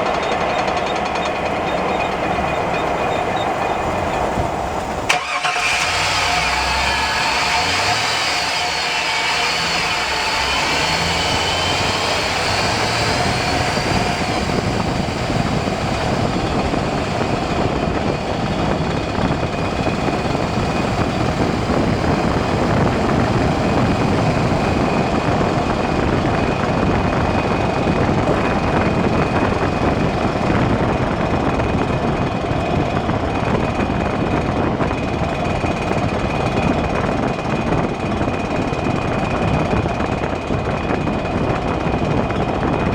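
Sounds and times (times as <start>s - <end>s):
higher whine rising in pitch: 0.0s - 33.5s
constant high whine: 0.0s - 42.9s
road and wind noise: 0.0s - 42.9s.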